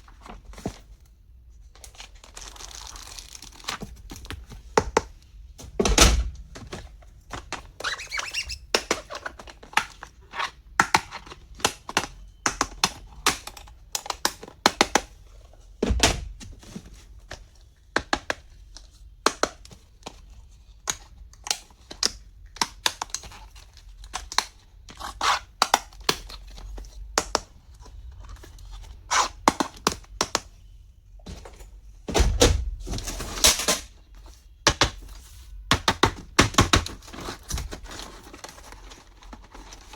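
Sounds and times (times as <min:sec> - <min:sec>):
wrapping crinkling and tearing: 0:01.6 - 0:04.3.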